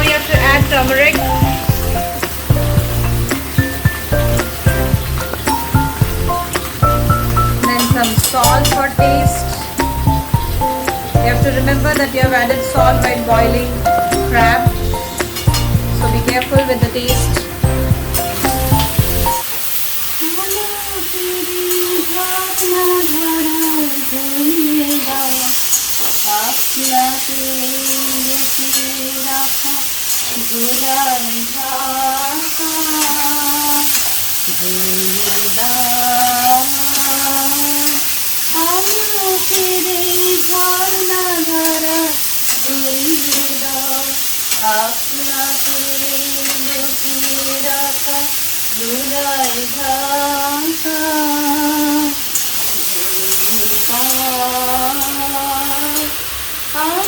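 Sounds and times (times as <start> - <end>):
slow tune of held notes: 0.0 - 19.4
vegetables sizzling in oil: 0.0 - 57.0.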